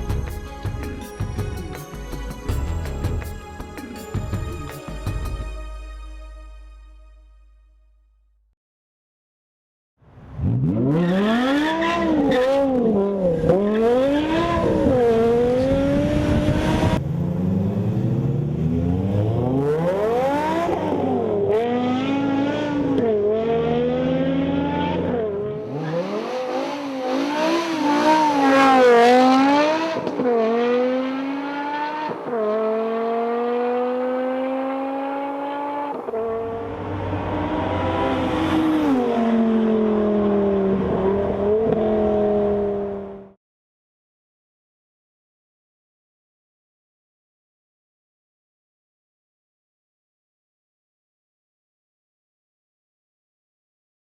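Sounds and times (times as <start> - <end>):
car engine revving and accelerating: 10.1 - 43.4.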